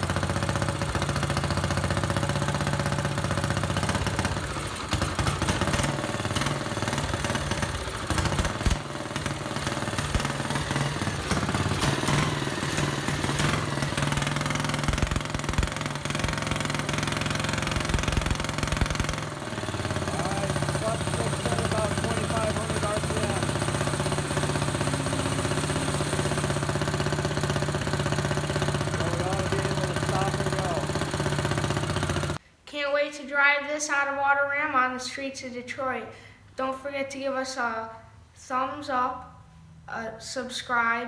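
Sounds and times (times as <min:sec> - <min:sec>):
small race car engine running: 0:00.0 - 0:32.4.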